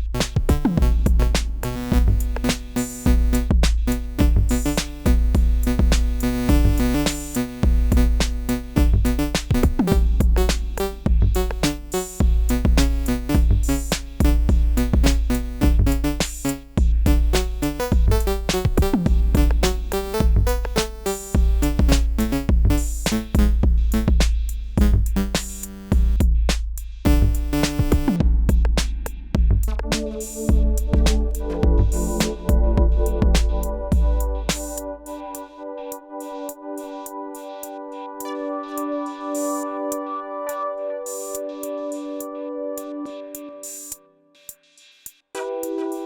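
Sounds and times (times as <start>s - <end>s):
synthesizer playing fast repeating notes: 0.0s - 26.2s, 27.1s - 28.2s, 29.7s - 44.0s
heavy kick drum: 0.0s - 34.8s
drum machine beat: 0.0s - 35.5s, 39.3s - 39.7s, 41.1s - 42.3s, 43.3s - 46.0s.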